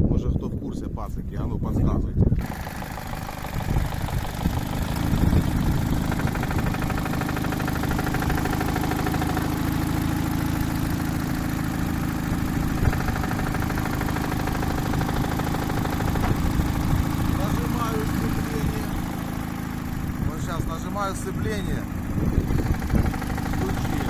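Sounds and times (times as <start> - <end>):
fast light ticking: 2.4 - 20.0
car engine idling: 2.4 - 24.0
engine knock: 2.4 - 24.0.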